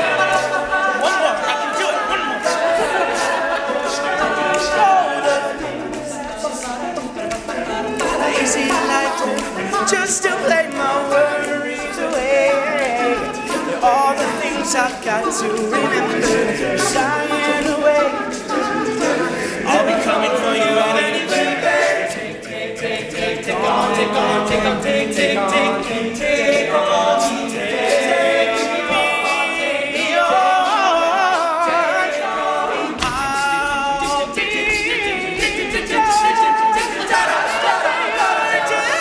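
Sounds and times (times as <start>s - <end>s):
male group singing in harmony: 0.0s - 39.0s
vocal percussion clicks and hisses: 0.0s - 39.0s.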